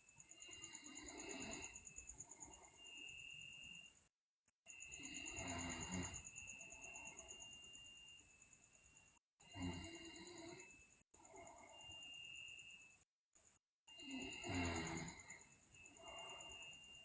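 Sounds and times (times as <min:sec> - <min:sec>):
girl snoring: 0:00.4 - 0:01.9, 0:04.8 - 0:06.4, 0:09.4 - 0:11.9, 0:13.9 - 0:16.9.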